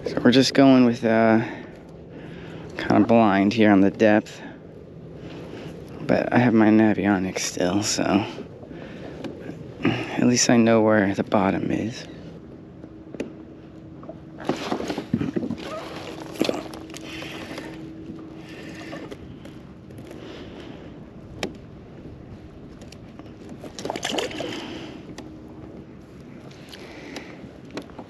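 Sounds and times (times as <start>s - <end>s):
water splashing against kayak hull: 14.0s - 21.7s.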